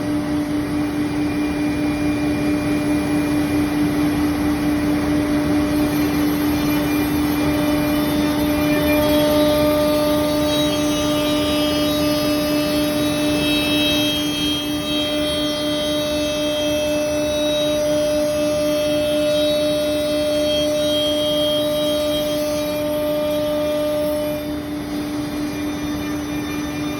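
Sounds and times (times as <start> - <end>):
router spindle hum: 0.0 - 26.9.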